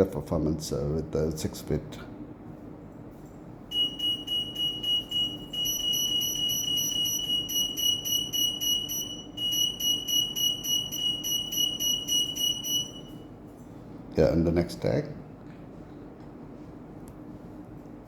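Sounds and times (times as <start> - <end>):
electronic alarm beeping: 3.7 - 13.3.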